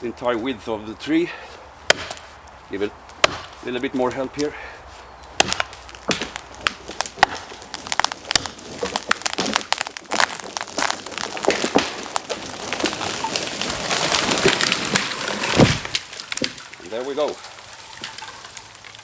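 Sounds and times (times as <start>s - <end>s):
tree wood cracking and splintering: 1.3s - 19.0s
rush of falling tree: 5.3s - 19.0s.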